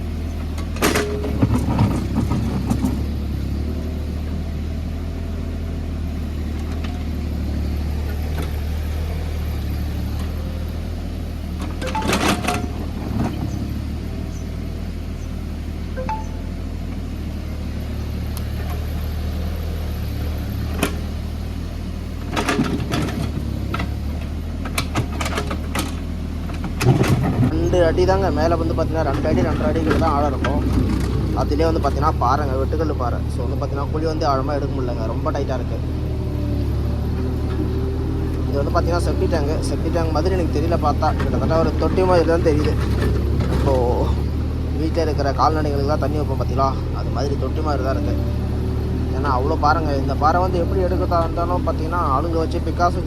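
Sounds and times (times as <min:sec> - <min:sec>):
excavator diesel engine running: 0:00.0 - 0:53.0
bucket clanking on rock: 0:00.6 - 0:03.1.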